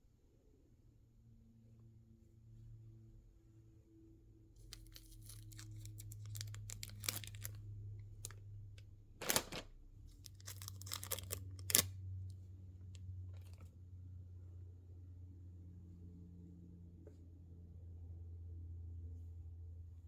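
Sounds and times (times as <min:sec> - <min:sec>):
packaging tearing and rustling: 0:04.7 - 0:07.6, 0:09.2 - 0:11.9.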